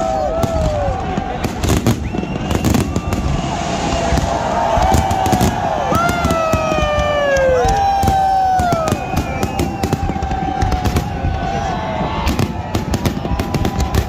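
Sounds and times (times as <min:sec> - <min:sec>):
fireworks exploding: 0:00.0 - 0:14.0.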